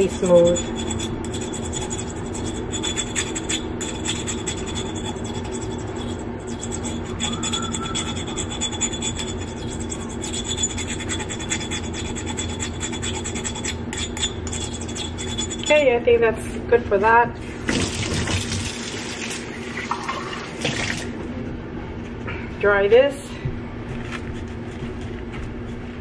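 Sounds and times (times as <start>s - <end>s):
metal nail file scraping glass: 0.0s - 15.9s.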